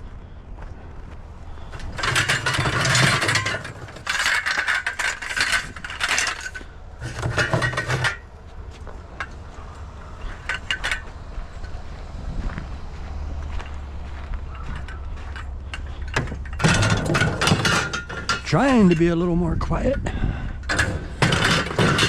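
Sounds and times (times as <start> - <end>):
scrap metal clattering: 1.6 - 8.3, 9.1 - 12.0, 14.5 - 19.4, 20.5 - 22.0.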